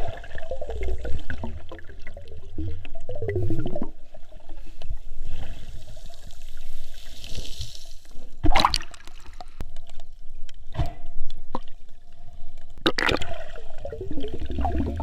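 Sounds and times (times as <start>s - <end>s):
sea water sloshing and bubbling: 0.0s - 15.0s.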